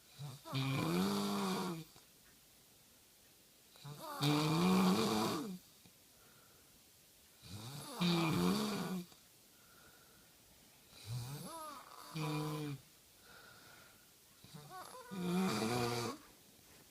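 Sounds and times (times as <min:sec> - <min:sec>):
loud snoring: 0:00.1 - 0:01.9, 0:03.8 - 0:05.6, 0:07.4 - 0:09.1, 0:10.9 - 0:12.8, 0:14.4 - 0:16.2.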